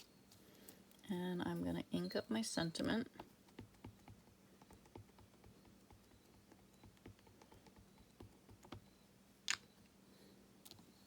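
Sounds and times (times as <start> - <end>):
rubber stamp tapping ink pad: 3.1 - 8.9.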